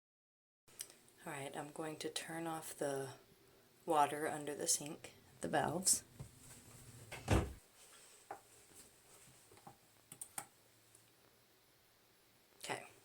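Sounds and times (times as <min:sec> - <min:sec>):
cabinet door thud: 0:07.1 - 0:07.6.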